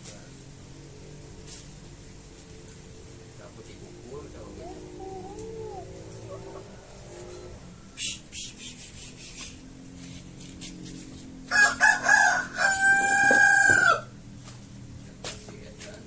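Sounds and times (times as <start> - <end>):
rooster crowing: 4.6 - 8.0, 11.5 - 14.1.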